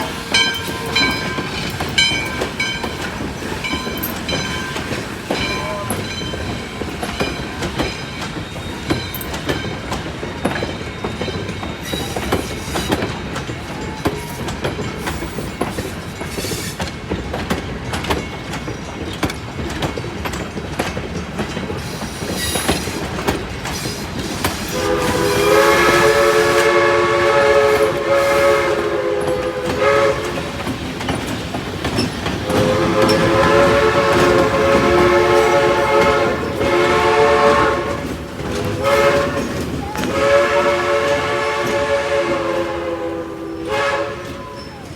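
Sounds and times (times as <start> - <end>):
locomotive horn chime: 0.0 - 6.7, 24.7 - 30.6, 32.4 - 44.9
train wheels clattering: 0.0 - 44.9.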